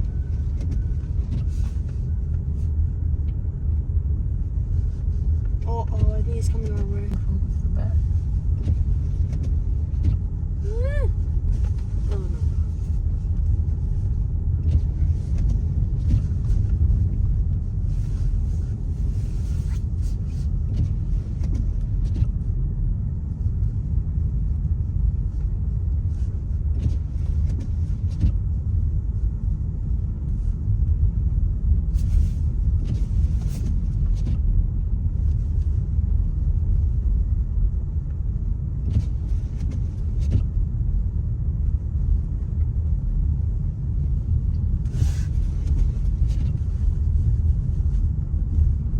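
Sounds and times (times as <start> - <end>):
car engine and road rumble: 0.0 - 48.9.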